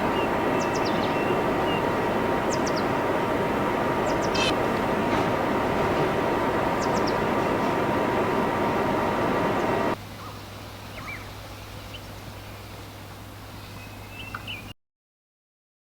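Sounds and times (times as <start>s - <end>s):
subway train rumbling: 0.0s - 10.0s
faint steady hum: 0.0s - 14.7s.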